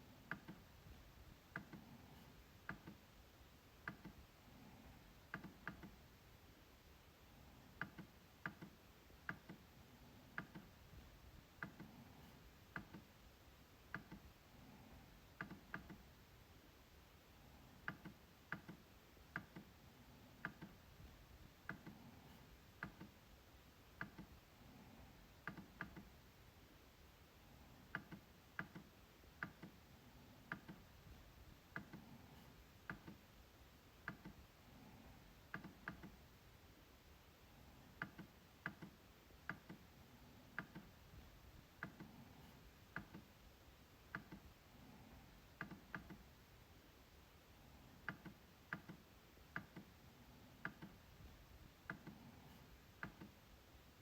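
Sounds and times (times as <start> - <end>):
trackpad clicking: 38.0 - 39.8.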